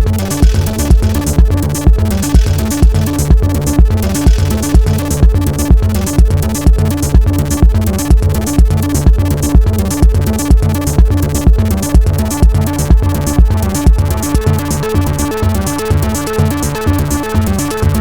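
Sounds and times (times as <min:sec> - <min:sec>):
drum machine kick: 0:00.0 - 0:18.0
hi-hats: 0:00.0 - 0:18.0
pitched synth parts: 0:00.0 - 0:18.0
synth bass line: 0:00.0 - 0:18.0.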